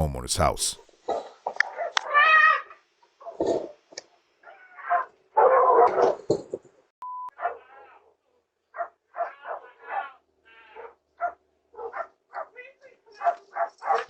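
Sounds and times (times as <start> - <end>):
dog barking: 1.6 - 2.0, 4.8 - 6.2, 7.3 - 8.0, 8.8 - 14.0.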